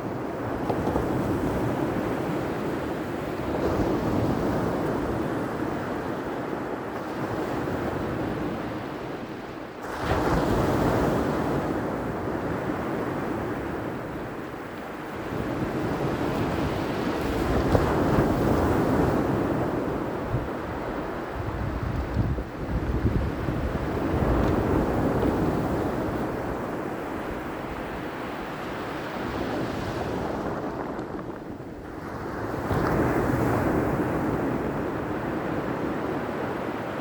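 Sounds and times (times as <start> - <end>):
wind buffeting microphone: 15.1 - 36.7.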